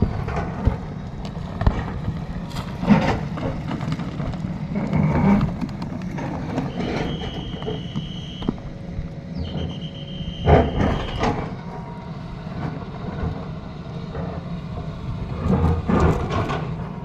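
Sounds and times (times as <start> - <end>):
excavator diesel engine running: 0.0 - 17.0
high steady whine: 5.7 - 14.2.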